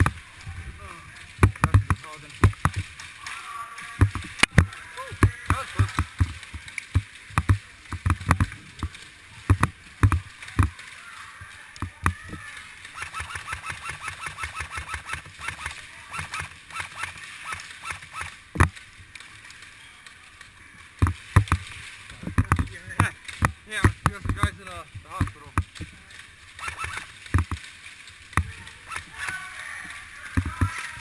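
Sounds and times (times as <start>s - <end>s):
gear knocking against camera: 1.4s - 2.8s
airsoft guns firing: 12.9s - 18.4s.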